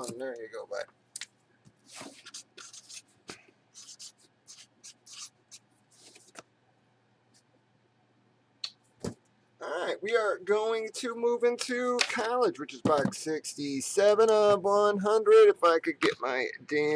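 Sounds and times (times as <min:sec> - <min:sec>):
faint steady hum: 0:00.0 - 0:16.9
scratchy rubbing and rustling: 0:01.8 - 0:03.2, 0:03.8 - 0:06.4.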